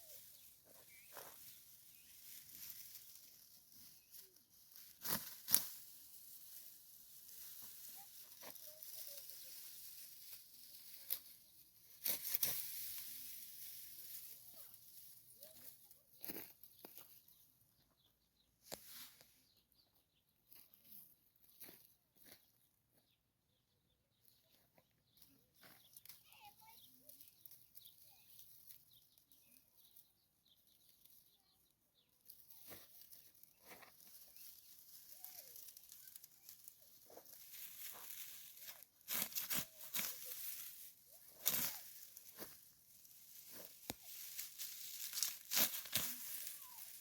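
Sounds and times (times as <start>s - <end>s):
dry rustling and crackling: 0.0s - 17.4s, 32.2s - 47.0s.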